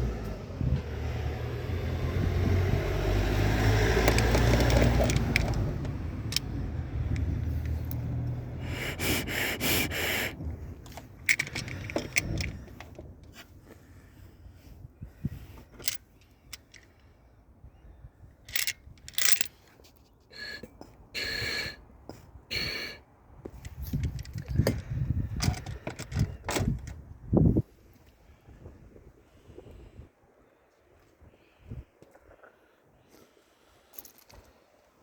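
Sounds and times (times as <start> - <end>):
clicks and scrapes: 4.0 - 5.7
loud hiss: 8.6 - 10.4.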